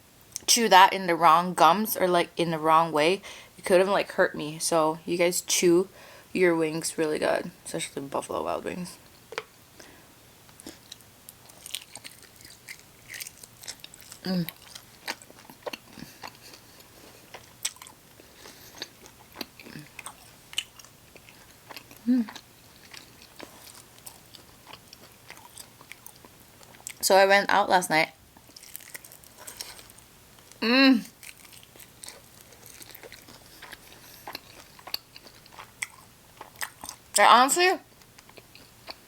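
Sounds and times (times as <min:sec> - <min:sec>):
chewing and biting: 0:10.6 - 0:27.0, 0:31.2 - 0:37.0.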